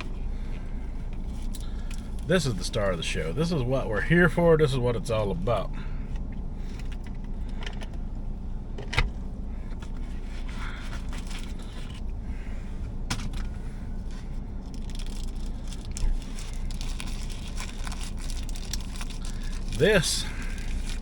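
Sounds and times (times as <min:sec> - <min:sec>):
low hum: 0:00.0 - 0:21.0
food packaging rustling: 0:14.6 - 0:21.0.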